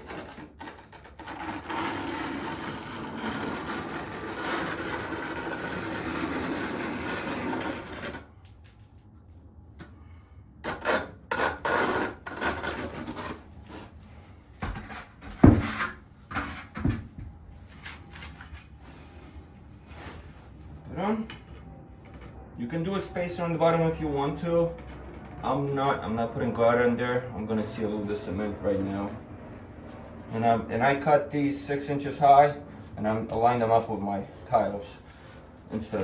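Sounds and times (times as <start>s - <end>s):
trowel scraping cement: 0.0s - 8.3s, 10.6s - 13.9s.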